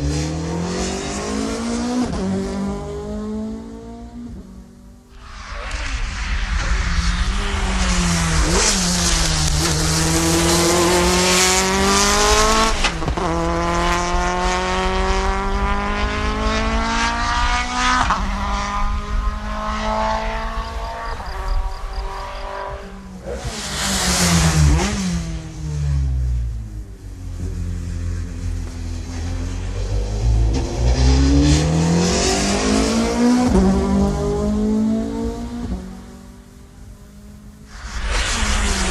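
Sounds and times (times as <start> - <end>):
race car engine accelerating: 5.7 - 26.1.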